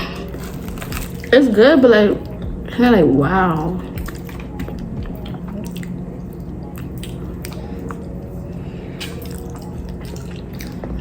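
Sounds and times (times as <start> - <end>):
person chewing: 0.0 - 1.3, 3.8 - 11.0
low hum: 0.0 - 11.0
wet mouth clicks and smacks: 4.0 - 8.0.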